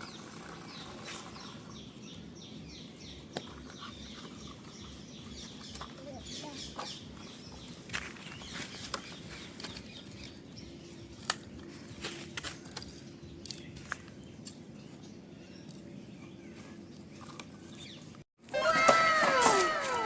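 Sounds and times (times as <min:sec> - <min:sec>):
faint bird chirps: 0:00.0 - 0:10.5.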